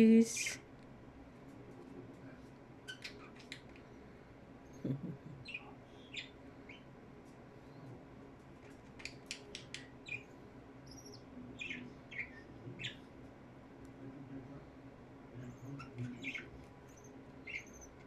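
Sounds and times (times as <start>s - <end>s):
faint steady hum: 0.0s - 18.0s
budgerigars chirping: 5.4s - 6.9s, 10.9s - 13.0s, 15.6s - 18.0s.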